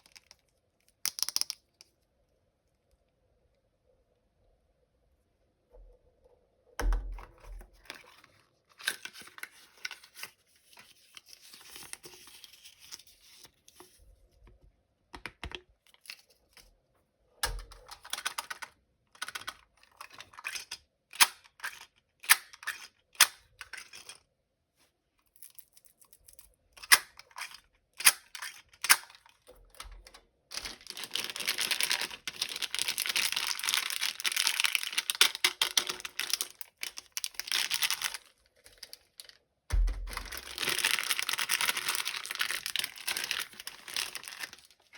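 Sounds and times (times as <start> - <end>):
packaging crinkling and tearing: 7.3 - 13.6, 25.5 - 44.9.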